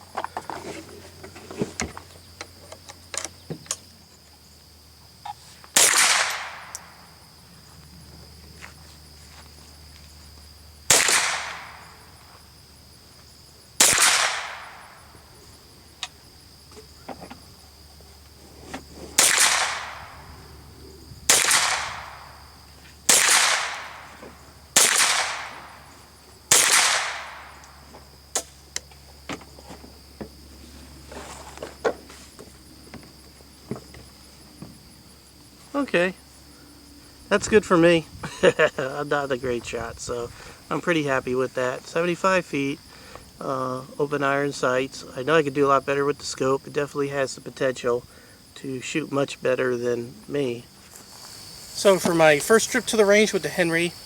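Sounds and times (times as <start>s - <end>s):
high insect buzz: 0.0s - 54.0s
rifle shots: 5.8s - 7.0s, 10.9s - 11.9s, 13.8s - 14.9s, 19.2s - 20.2s, 21.3s - 22.3s, 23.1s - 25.8s, 26.5s - 27.6s.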